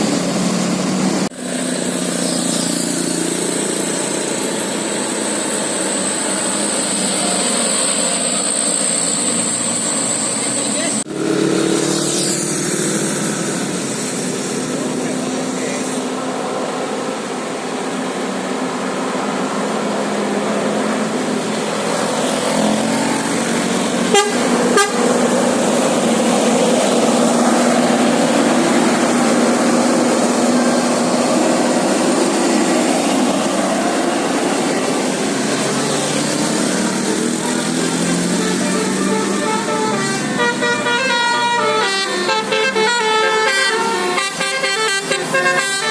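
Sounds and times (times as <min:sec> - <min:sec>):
bus engine: 0:00.0 - 0:45.9
roadside noise: 0:00.0 - 0:45.9
musical air horn: 0:24.1 - 0:25.4, 0:38.1 - 0:45.9.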